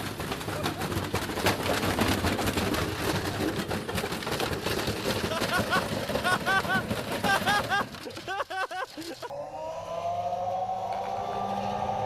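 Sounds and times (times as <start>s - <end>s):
washing machine rattling and knocking: 0.0s - 8.4s
low hum: 9.3s - 12.0s.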